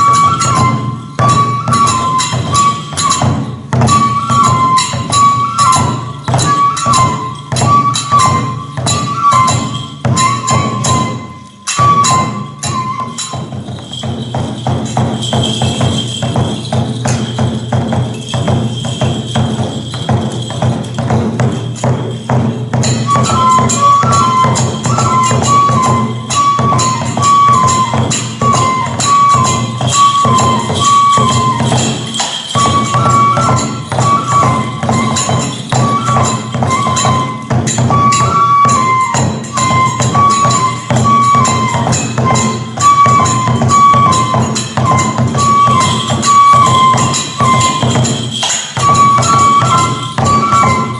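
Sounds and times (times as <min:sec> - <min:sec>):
flute melody: 0:00.0 - 0:17.4, 0:22.8 - 0:50.9
jingling hand cymbals: 0:00.0 - 0:50.9
rapid drum strokes: 0:00.0 - 0:50.9.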